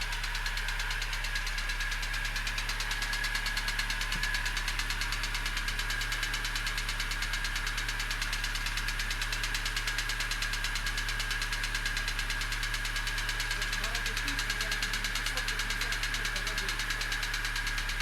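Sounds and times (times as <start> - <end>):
car engine idling with knock: 0.0 - 18.0.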